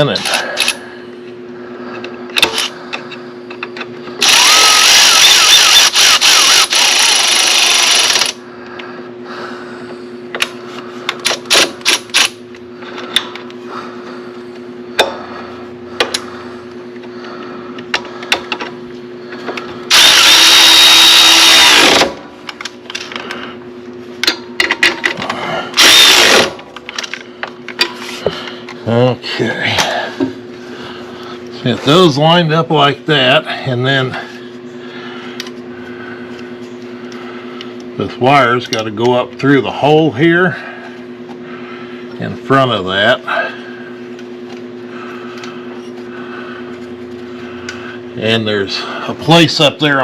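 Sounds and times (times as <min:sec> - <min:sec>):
steady low hum: 0:00.0 - 0:50.0
cordless power tool running nuts: 0:04.2 - 0:08.4, 0:11.2 - 0:12.4, 0:19.9 - 0:22.2, 0:25.8 - 0:26.7.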